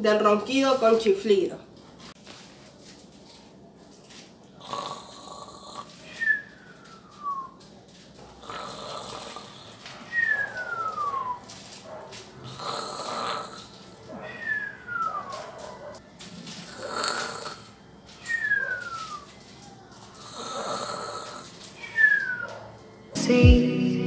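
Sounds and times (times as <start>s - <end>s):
person snoring: 4.6s - 6.0s, 8.4s - 9.8s, 12.5s - 13.7s, 16.7s - 17.7s, 20.2s - 21.6s.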